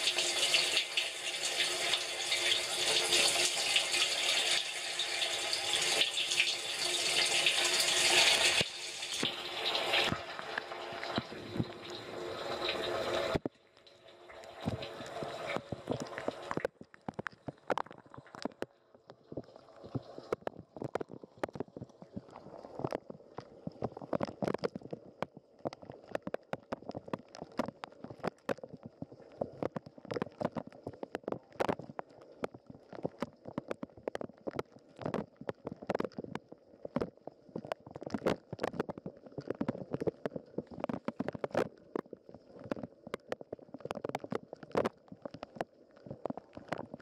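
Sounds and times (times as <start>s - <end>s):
water splashing inside dishwasher: 0.0s - 18.7s.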